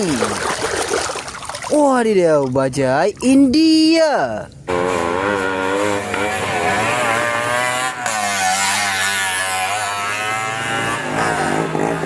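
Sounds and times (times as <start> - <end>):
small engine running: 4.7 - 12.0.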